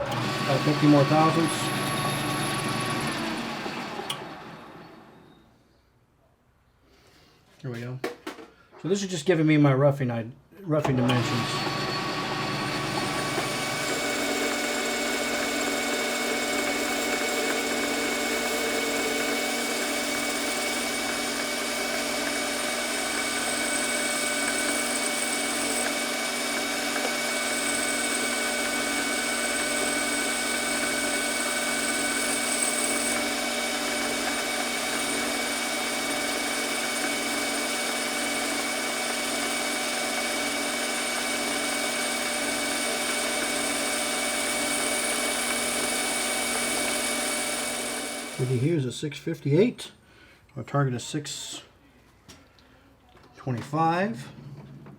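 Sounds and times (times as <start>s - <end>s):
metal lathe whining: 0.0s - 5.4s, 10.8s - 48.7s
faint high whistle: 5.1s - 5.9s.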